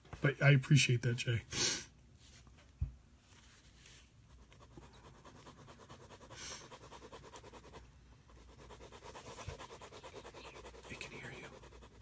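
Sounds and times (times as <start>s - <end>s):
pen scratching on paper: 4.3s - 12.0s.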